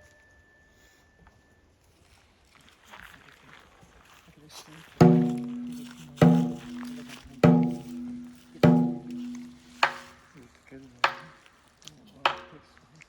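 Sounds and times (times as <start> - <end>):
ringing pitched knock: 5.0 - 10.1.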